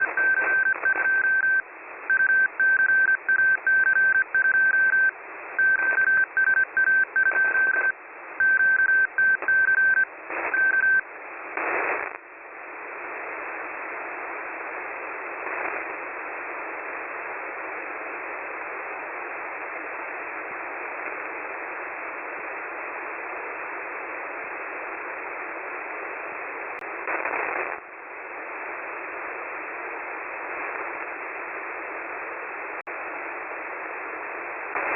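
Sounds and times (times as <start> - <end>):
morse code beeps: 0.0 - 11.0
radio static hiss: 0.0 - 34.9
burst of radio noise: 11.6 - 12.2, 26.9 - 27.8, 34.7 - 34.9.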